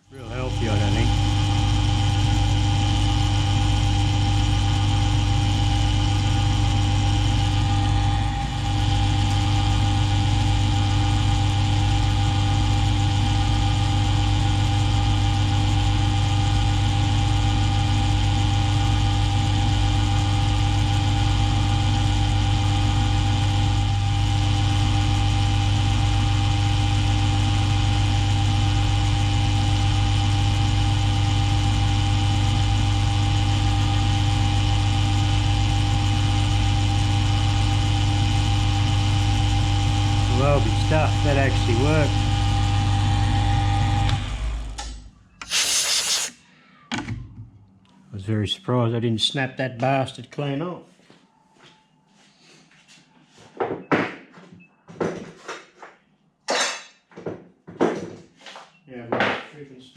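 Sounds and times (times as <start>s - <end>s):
drill motor humming: 0.0s - 46.4s
drill bit drilling through pin: 0.1s - 11.6s, 12.8s - 44.4s, 45.4s - 46.4s.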